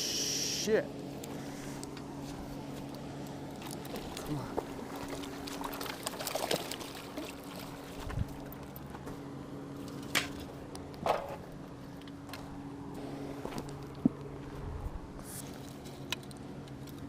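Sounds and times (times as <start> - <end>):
low steady hum: 0.0 - 17.0
water trickling and splashing: 3.5 - 8.8.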